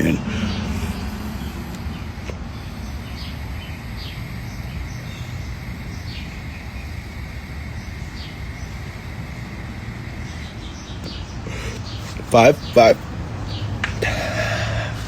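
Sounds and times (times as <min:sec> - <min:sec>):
bird chirping: 0:00.0 - 0:15.0
steady low rumble: 0:00.0 - 0:15.0.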